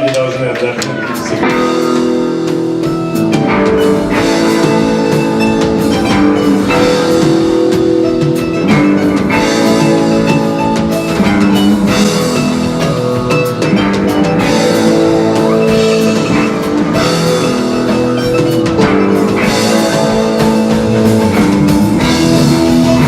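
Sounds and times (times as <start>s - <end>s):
drum kit steady beat: 0.0s - 23.0s
sustained guitar chords: 0.7s - 23.0s.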